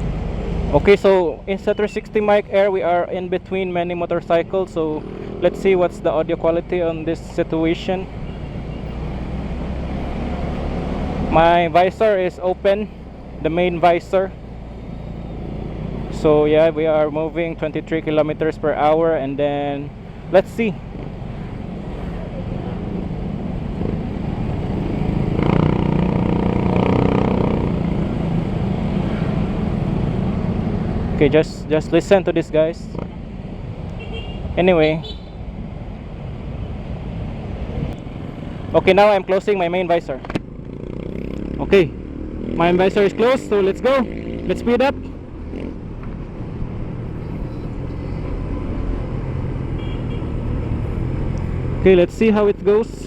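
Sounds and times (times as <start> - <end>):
motorcycle engine and wind in helmet: 0.0 - 53.0
road rumble: 0.0 - 53.0
motorcycle engine running: 23.6 - 29.2.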